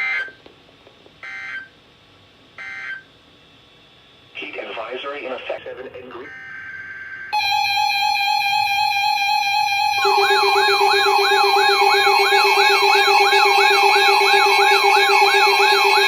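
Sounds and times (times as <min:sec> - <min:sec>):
steady buzzy alarm tone: 0:02.6 - 0:03.1, 0:06.2 - 0:16.0
siren-like warble: 0:06.3 - 0:16.0
lower steady tone: 0:07.4 - 0:16.0.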